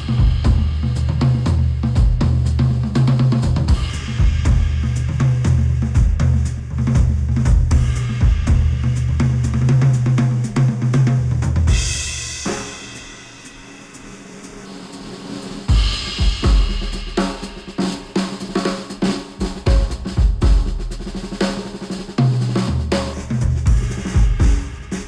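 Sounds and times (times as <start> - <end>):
instrumental music with drums and bass: 0.0 - 25.0
cymbal wash: 11.7 - 18.6, 23.7 - 25.0.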